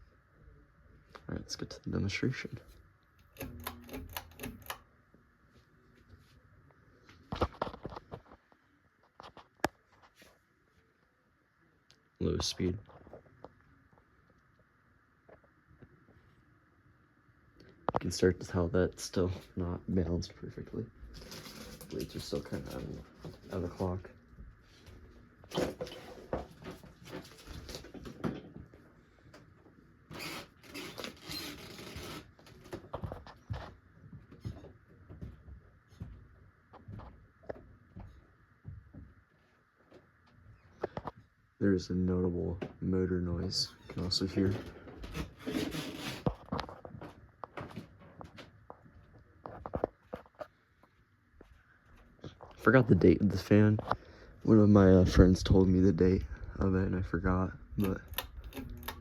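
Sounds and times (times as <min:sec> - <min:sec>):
low room hum: 0:00.0 - 0:59.0
ceiling fan running: 0:01.7 - 0:08.4
sharp clicks and knocks: 0:03.2 - 0:04.8
fan ticks and rattles: 0:03.2 - 0:04.9.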